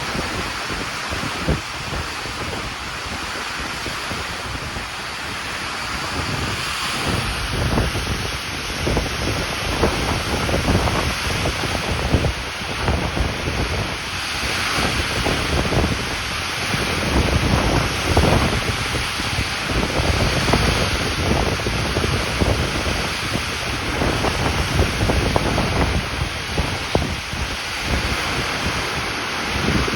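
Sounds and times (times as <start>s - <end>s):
strong wind gusting on microphone: 0.0s - 29.9s.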